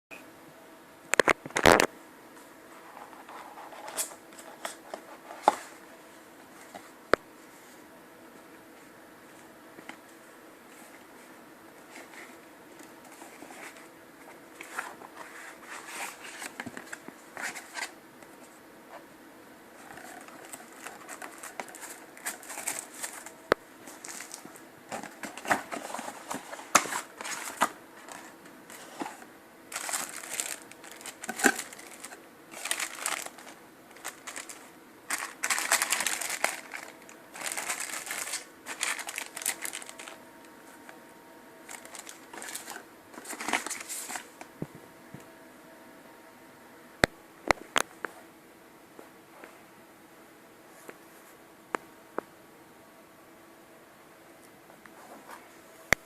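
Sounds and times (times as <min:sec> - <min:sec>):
packaging rustling and crinkling: 0:14.5 - 0:18.0, 0:19.8 - 0:40.2, 0:41.6 - 0:44.5.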